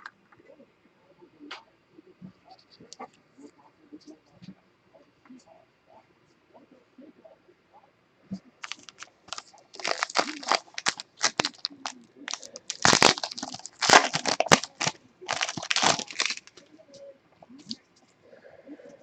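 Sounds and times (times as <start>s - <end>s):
wrapper crinkling and tearing: 8.6s - 16.6s.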